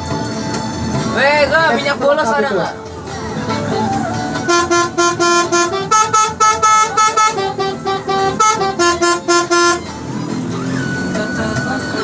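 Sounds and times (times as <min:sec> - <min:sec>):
bus horn playing a quick tune: 0:04.3 - 0:10.0.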